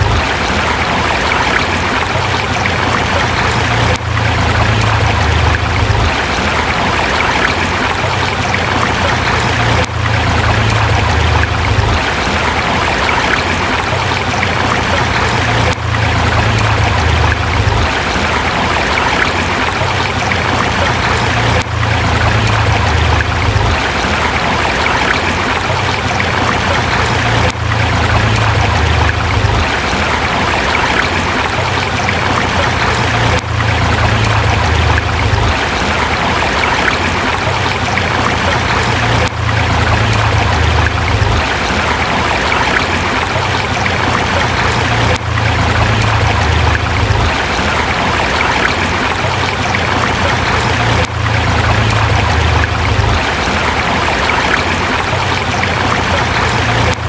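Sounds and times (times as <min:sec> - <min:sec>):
river rushing over rocks: 0:00.0 - 0:57.0.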